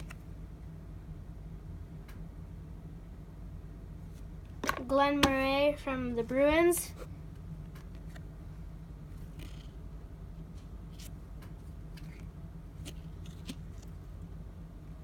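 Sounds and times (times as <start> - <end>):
steady low hum: 0.0 - 15.0
cards clicking and rustling: 9.2 - 9.8, 10.9 - 14.0.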